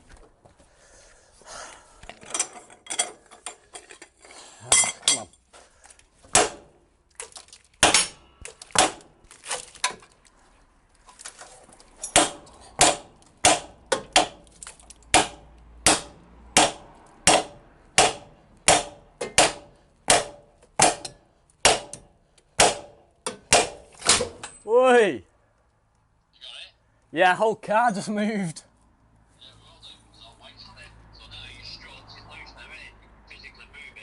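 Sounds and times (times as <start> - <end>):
hammer striking steel: 12.0 - 14.5, 15.1 - 24.6.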